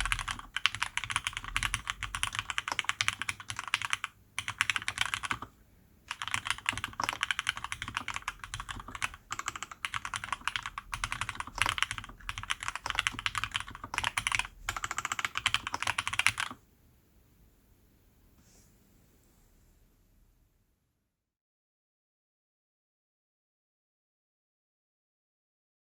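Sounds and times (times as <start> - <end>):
mechanical keyboard typing: 0.0 - 5.5, 6.1 - 16.6.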